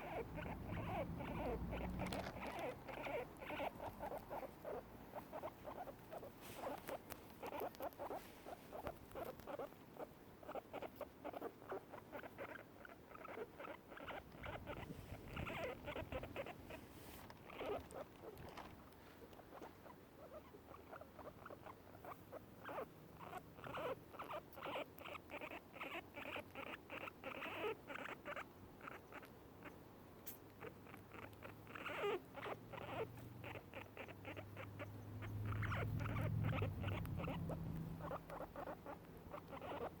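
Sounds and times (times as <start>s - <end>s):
guinea pigs chewing grass: 0.0s - 40.0s
guinea pigs' soft happy sound: 0.0s - 40.0s
low steady hum: 28.5s - 40.0s.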